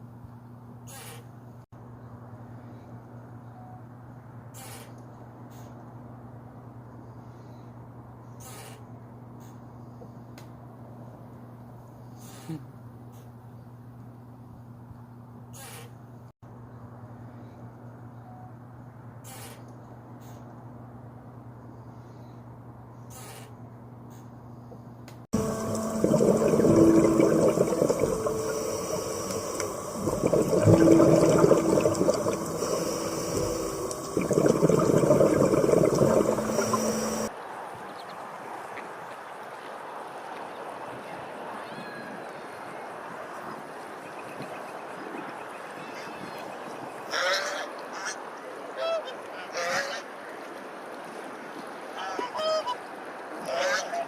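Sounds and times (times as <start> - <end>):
rushing churning water: 25.4 - 37.3
steady background hiss: 25.4 - 37.3
geese honking: 53.5 - 54.0.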